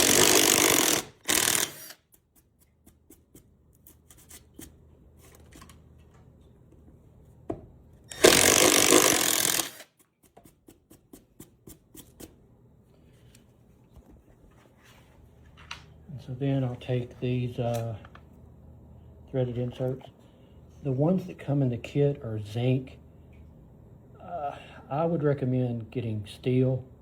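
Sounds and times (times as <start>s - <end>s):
power drill boring: 0.0s - 2.0s, 8.1s - 9.9s.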